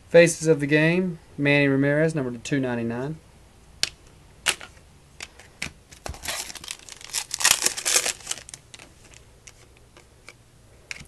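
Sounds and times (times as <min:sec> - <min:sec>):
foil wrapper crinkling: 0:06.0 - 0:09.7.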